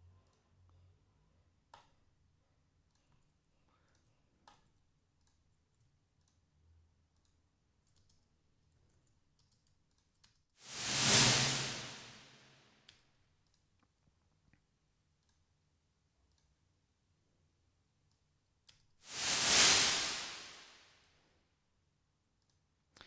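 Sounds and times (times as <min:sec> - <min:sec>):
computer mouse clicks: 0:07.1 - 0:10.4
whoosh sound effect: 0:10.7 - 0:12.4, 0:19.1 - 0:20.8.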